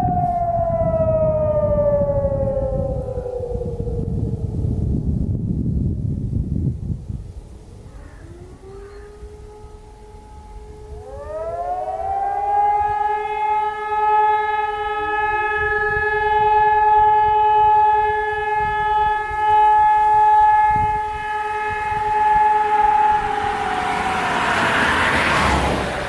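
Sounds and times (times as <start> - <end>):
low steady siren tone: 0.0 - 26.0
siren winding up to high tone: 19.6 - 26.0.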